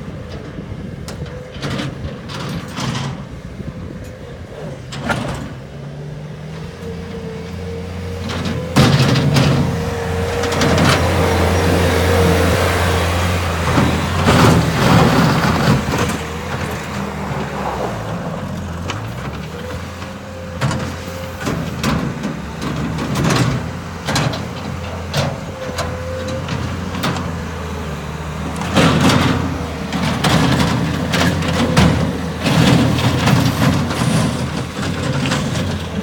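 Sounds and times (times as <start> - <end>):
diesel engine running: 0.0 - 36.0
knocks and clanks: 4.6 - 5.7, 8.1 - 27.6, 28.4 - 36.0.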